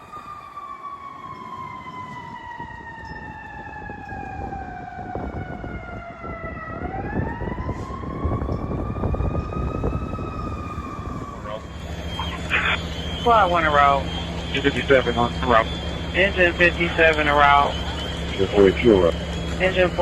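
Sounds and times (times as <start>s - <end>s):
fire truck siren: 0.0s - 20.0s
road noise: 0.0s - 20.0s
truck engine rumble: 5.2s - 20.0s.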